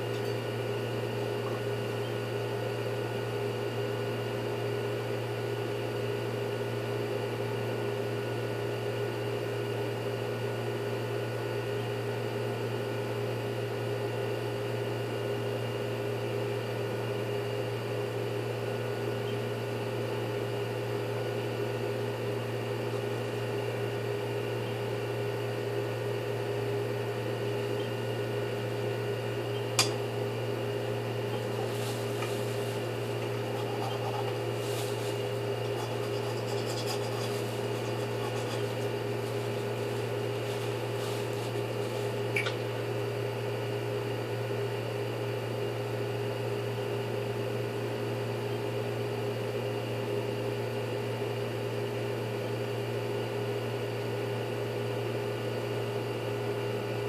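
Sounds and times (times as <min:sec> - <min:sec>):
electric motor hum: 0:00.0 - 0:02.4, 0:25.8 - 0:43.5
faint scrapes: 0:31.4 - 0:42.2.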